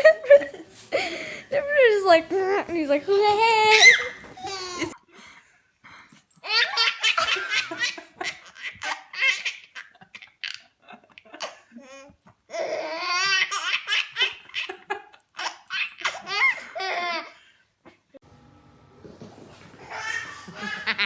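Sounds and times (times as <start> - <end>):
baby laughing: 3.7 - 5.0, 6.4 - 17.4, 19.8 - 21.0.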